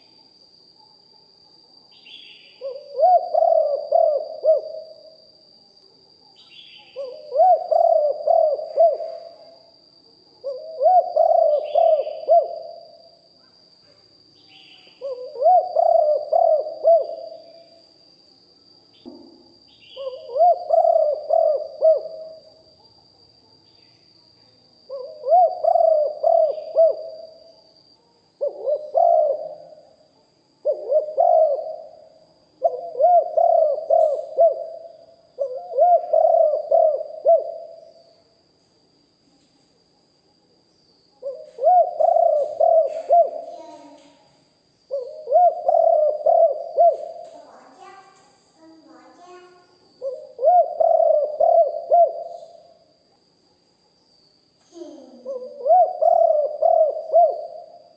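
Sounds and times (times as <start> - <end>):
dove cooing: 2.6 - 5.2, 6.6 - 9.5, 10.4 - 13.0, 15.0 - 17.6, 19.9 - 22.6, 24.9 - 27.5, 28.4 - 29.9, 30.6 - 38.0, 41.2 - 44.2, 44.9 - 48.0, 48.7 - 52.8, 54.8 - 57.9.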